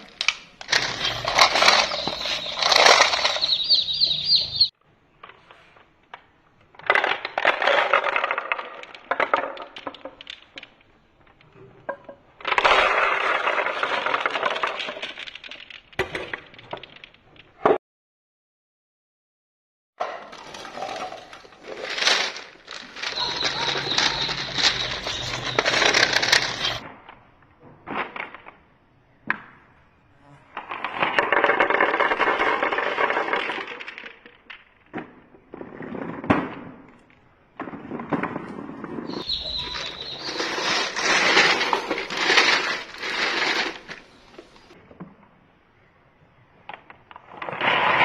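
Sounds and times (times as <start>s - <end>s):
marbles rolling on plastic track: 0.2s - 3.7s, 6.9s - 10.8s, 12.5s - 17.2s, 20.3s - 26.8s, 30.8s - 34.6s, 39.1s - 44.7s.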